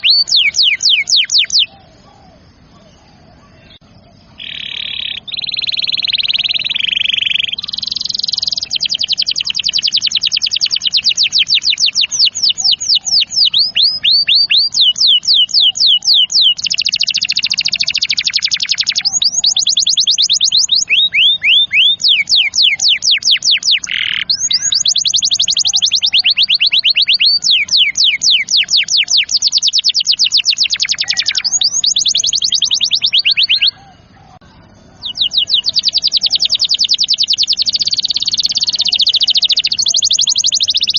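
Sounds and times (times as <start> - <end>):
canary singing trills: 0.0 - 40.9.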